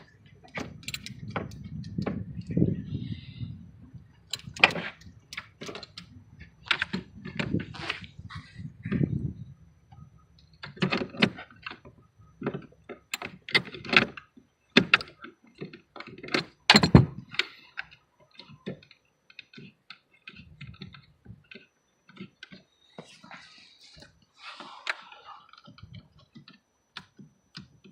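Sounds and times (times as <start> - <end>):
metal tools clicking and clinking: 0.4 - 2.6, 4.3 - 6.1.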